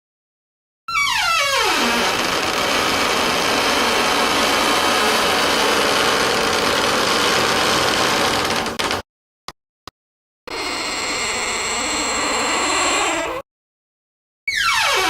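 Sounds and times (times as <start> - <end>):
heavy door creaking open: 0.9 - 9.0, 10.5 - 13.4.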